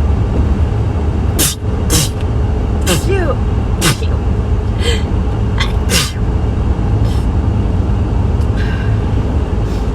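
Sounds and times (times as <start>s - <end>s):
low rumble: 0.0s - 9.9s
person sniffing: 1.4s - 2.2s, 3.8s - 4.1s, 5.9s - 6.2s.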